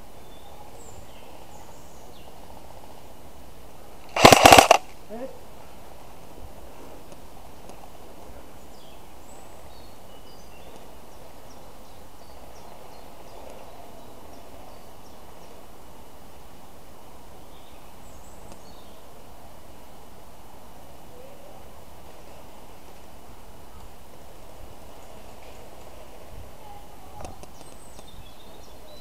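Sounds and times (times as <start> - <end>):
outdoor background noise: 0.0 - 29.0
birds chirping: 3.8 - 5.4, 26.6 - 29.0.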